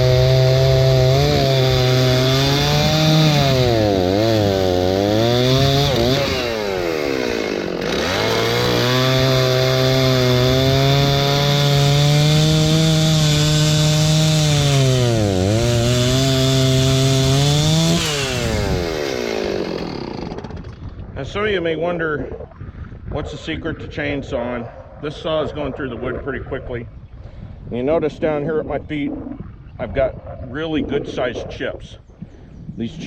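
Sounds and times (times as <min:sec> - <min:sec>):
chainsaw cutting through log: 0:00.0 - 0:21.1.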